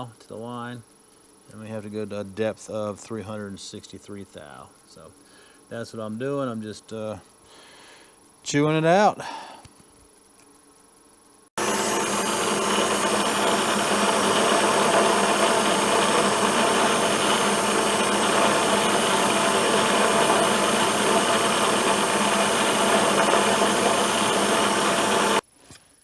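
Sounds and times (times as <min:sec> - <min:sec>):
milling machine cutting steel: 0:11.6 - 0:25.4.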